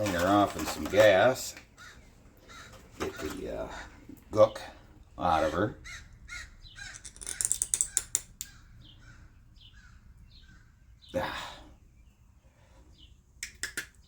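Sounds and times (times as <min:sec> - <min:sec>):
plastic parts clicking and rattling: 0:00.0 - 0:01.4, 0:06.9 - 0:08.5
birds chirping: 0:00.0 - 0:14.0.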